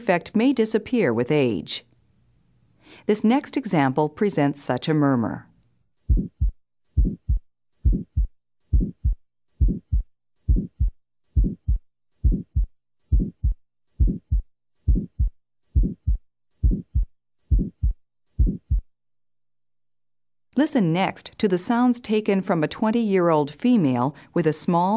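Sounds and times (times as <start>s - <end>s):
heart murmur: 6.1s - 18.9s
heartbeat through stethoscope: 6.1s - 18.9s.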